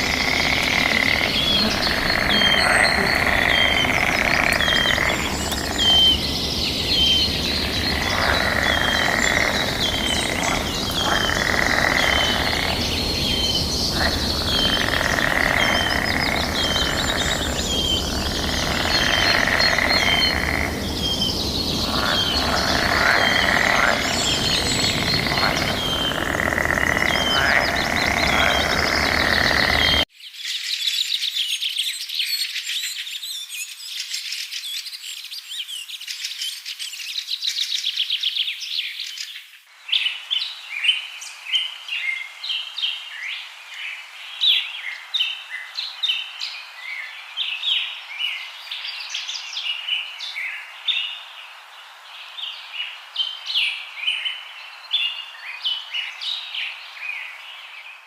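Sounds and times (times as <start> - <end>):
chirping and trilling calls: 0.0 - 30.1.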